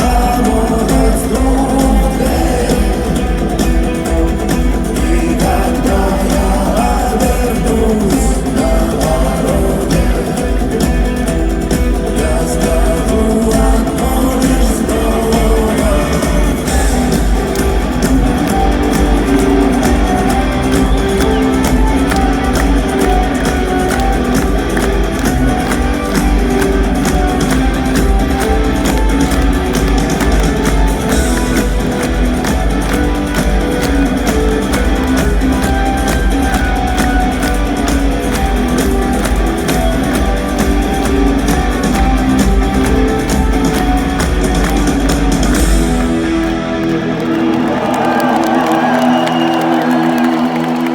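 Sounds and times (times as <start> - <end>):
drum kit: 0.0 - 50.6
electric guitars: 0.0 - 50.9.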